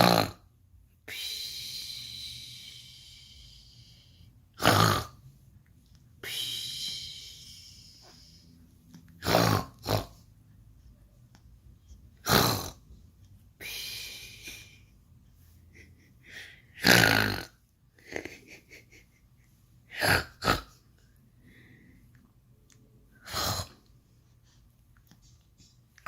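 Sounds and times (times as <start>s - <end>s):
person snoring: 0.0s - 0.4s, 4.6s - 5.2s, 9.2s - 10.2s, 12.2s - 12.8s, 16.3s - 17.6s, 19.9s - 20.8s, 23.2s - 23.8s.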